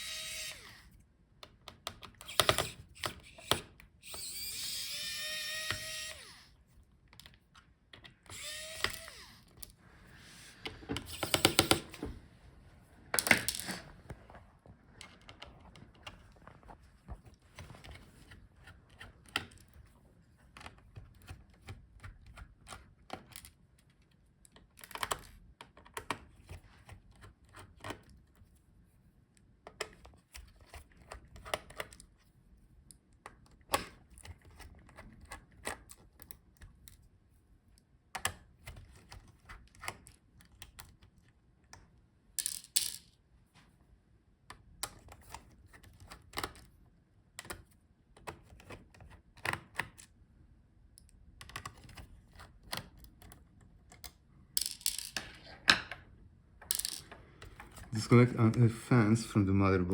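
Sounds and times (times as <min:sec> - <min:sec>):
screwdriver clicking and tapping: 0:01.4 - 0:06.3, 0:11.0 - 0:12.1.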